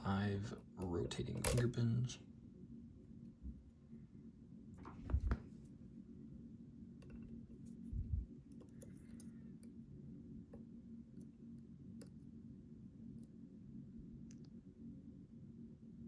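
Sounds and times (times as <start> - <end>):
steady low hum: 0.0 - 16.0
lock-picking tools clicking: 1.3 - 1.7
dull low thump: 4.8 - 5.5.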